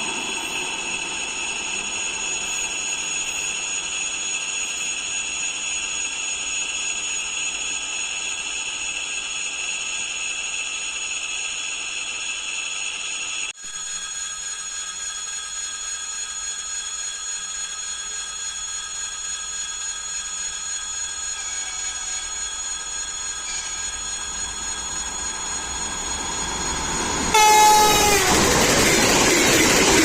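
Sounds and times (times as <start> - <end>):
train rumbling: 0.0 - 10.6, 20.9 - 30.0
electric train whine: 0.0 - 30.0.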